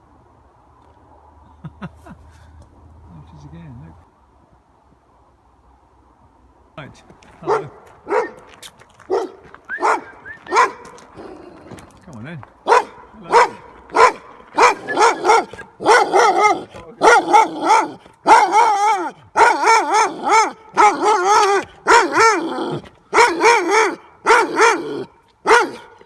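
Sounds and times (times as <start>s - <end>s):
dog barking and yelping: 7.4s - 8.5s, 9.1s - 11.8s, 12.7s - 26.0s.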